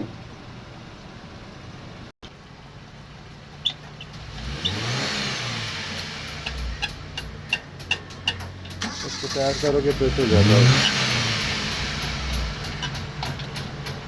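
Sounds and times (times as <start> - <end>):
sharp metallic clicks: 3.7 - 14.0
vehicle passing by: 9.1 - 13.0.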